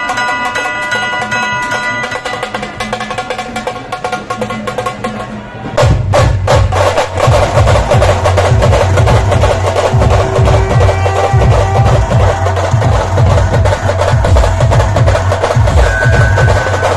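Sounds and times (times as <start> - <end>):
drum band playing: 0.0 - 16.9
deep drum booms: 5.8 - 16.9
rapid snare drum strikes: 5.8 - 16.9.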